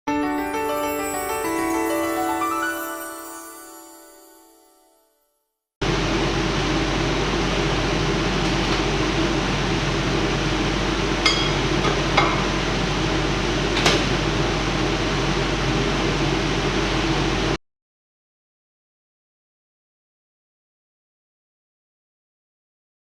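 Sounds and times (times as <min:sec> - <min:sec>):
microwave oven humming: 0:05.8 - 0:17.6.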